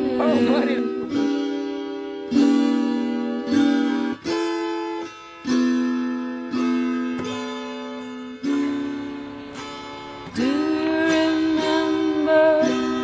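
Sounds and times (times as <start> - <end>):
acoustic guitar strummed slowly: 0.0 - 13.0.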